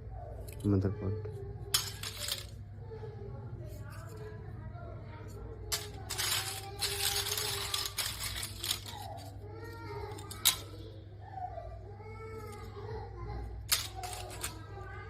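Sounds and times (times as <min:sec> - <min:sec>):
faint voices: 0:00.0 - 0:15.0
rustling and small clicks: 0:05.7 - 0:09.4, 0:10.0 - 0:10.8, 0:13.6 - 0:14.9.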